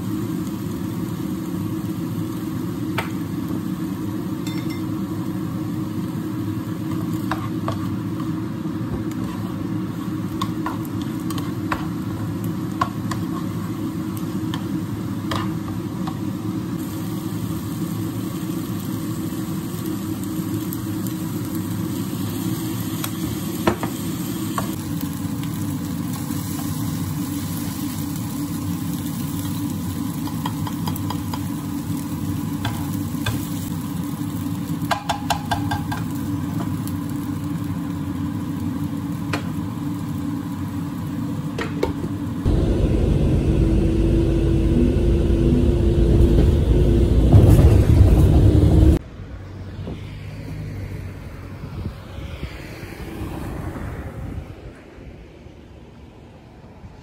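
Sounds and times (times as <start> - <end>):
food frying in a pan: 0.0 - 47.2
low rumbling noise: 42.5 - 56.9.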